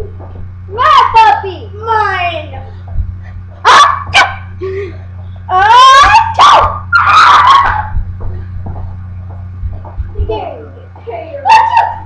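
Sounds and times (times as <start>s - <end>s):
low hum: 0.0s - 12.0s
puppy yelping and barking: 5.8s - 7.9s.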